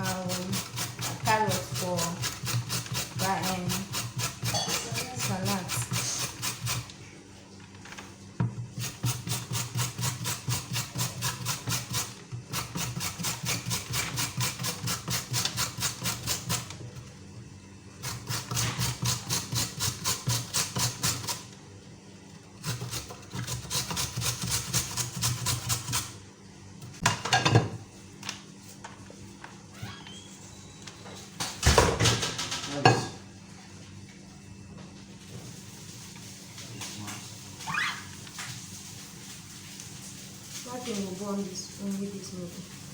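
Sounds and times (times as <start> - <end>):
knife cutting carrots: 0.0 - 6.9, 8.8 - 16.7.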